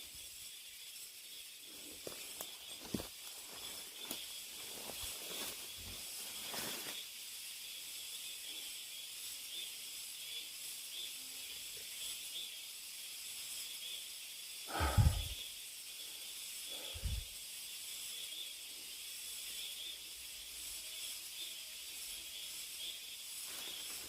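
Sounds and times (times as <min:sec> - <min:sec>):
cicadas singing: 0:00.0 - 0:24.0
footsteps: 0:01.9 - 0:07.0.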